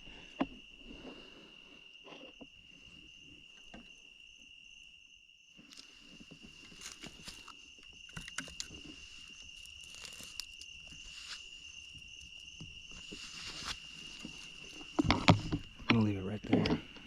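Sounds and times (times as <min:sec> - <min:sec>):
footsteps crackling through brush: 0:05.7 - 0:07.6, 0:09.2 - 0:15.0.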